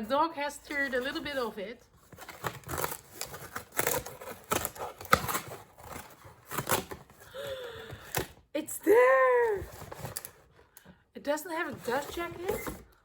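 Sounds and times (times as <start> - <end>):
paper packaging tearing: 2.1 - 7.2.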